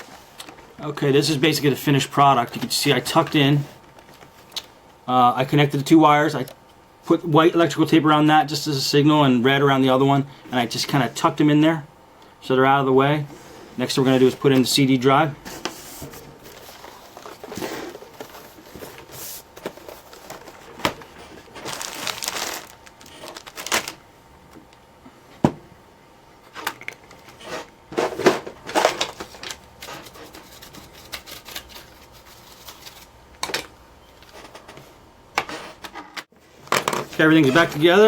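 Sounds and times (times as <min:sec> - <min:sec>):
rustling and scraping: 0:15.4 - 0:23.9.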